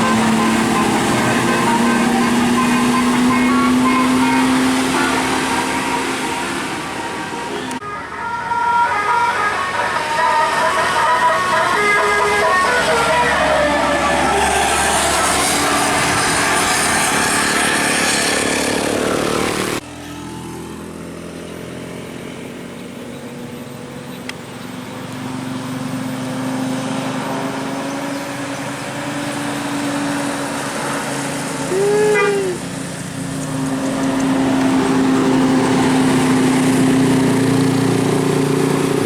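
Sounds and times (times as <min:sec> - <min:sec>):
vehicle horn: 0:00.0 - 0:17.4, 0:31.7 - 0:32.7
large vehicle passing: 0:00.0 - 0:39.0
traffic engine hum: 0:00.0 - 0:39.0.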